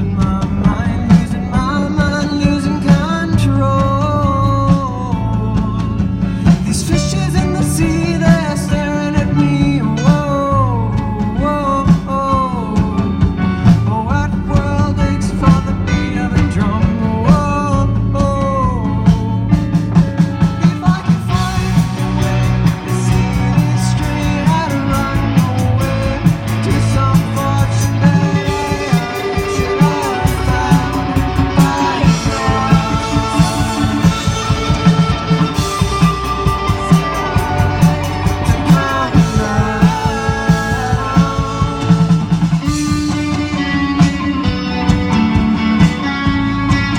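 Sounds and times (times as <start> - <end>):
rock music with guitar and drums: 0.0 - 46.9
sliding melody line: 20.6 - 46.9.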